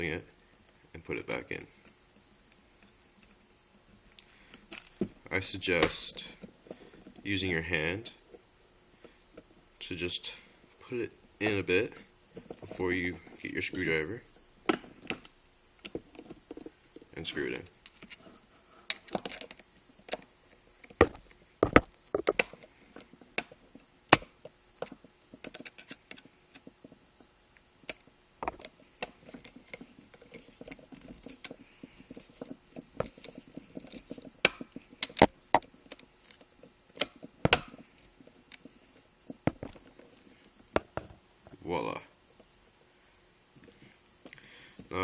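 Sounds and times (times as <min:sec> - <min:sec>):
faint handling noise: 0:11.7 - 0:45.0.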